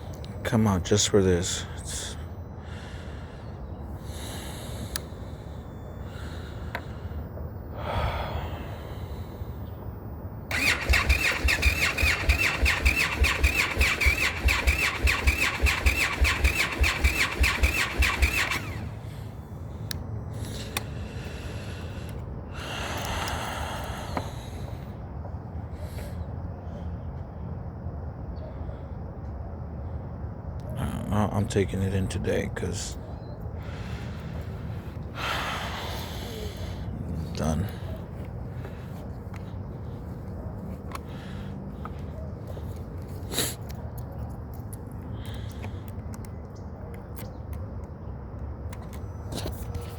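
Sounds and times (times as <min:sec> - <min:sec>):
motorcycle electric starter cranking: 0:10.5 - 0:19.4.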